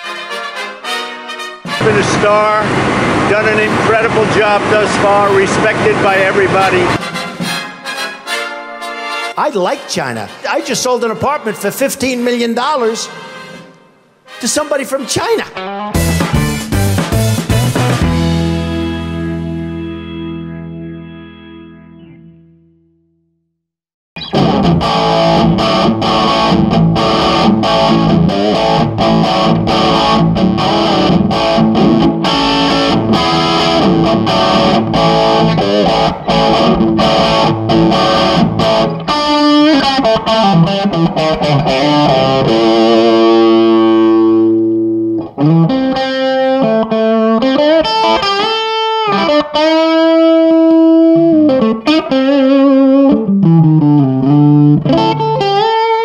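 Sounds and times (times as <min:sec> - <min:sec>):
overdriven electric guitar: 0:00.0 - 0:07.9, 0:15.4 - 0:22.9, 0:24.2 - 0:56.0.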